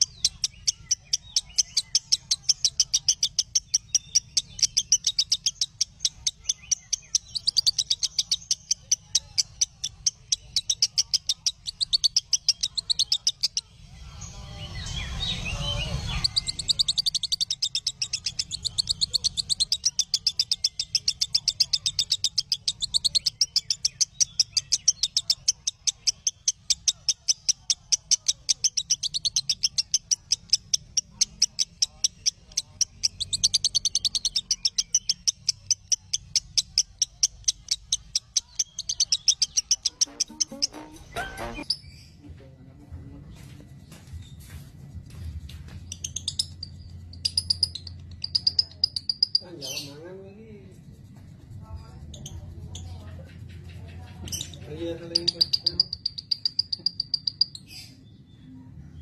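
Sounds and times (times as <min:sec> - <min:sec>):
bird chirping: 0:00.0 - 0:42.3, 0:45.7 - 0:50.3, 0:51.7 - 0:59.0.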